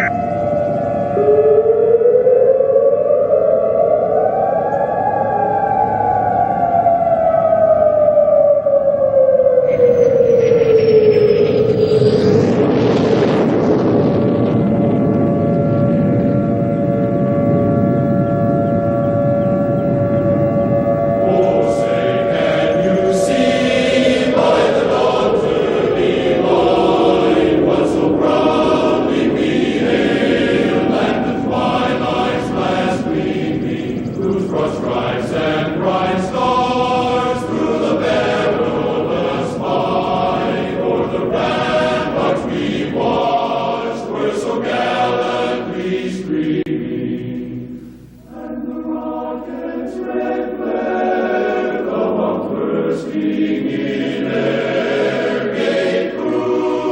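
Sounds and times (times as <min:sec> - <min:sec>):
siren gliding down: 0:00.0 - 0:43.0
choral singing: 0:18.6 - 0:56.9.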